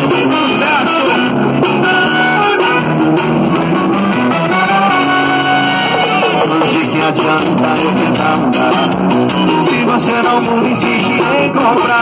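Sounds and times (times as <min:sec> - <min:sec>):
pop song on car stereo: 0:06.2 - 0:12.0.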